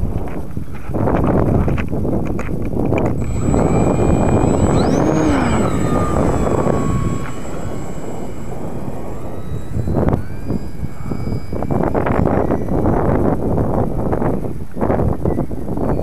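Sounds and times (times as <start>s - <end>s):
electric motor whine: 3.0s - 14.5s.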